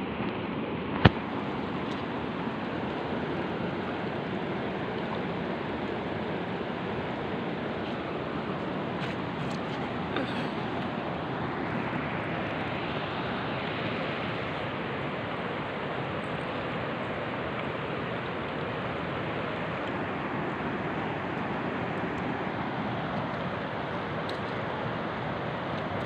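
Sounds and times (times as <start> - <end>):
fast-flowing water rushing: 0.0 - 26.0.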